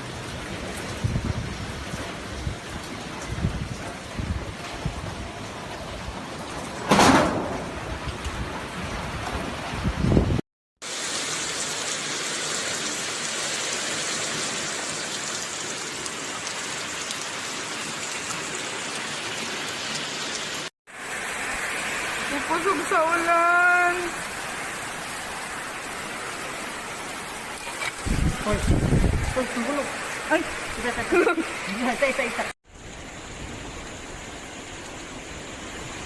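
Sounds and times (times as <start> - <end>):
heavy rain hiss: 0.0 - 10.2, 10.8 - 36.0
wind rushing: 28.0 - 29.4.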